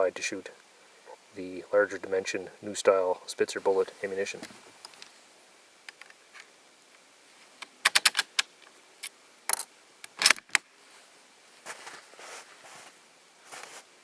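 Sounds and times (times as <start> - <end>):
soft rustling: 10.8 - 14.0.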